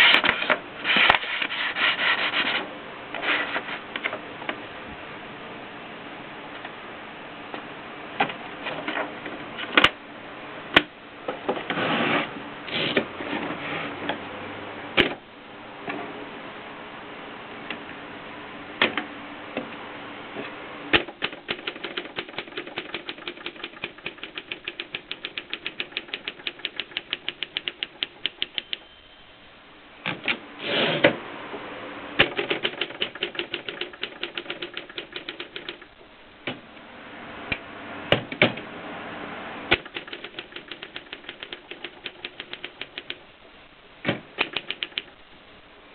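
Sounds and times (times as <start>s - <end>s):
typewriter keys clacking: 21.0s - 28.8s, 32.2s - 35.9s, 39.7s - 43.2s, 44.4s - 45.1s.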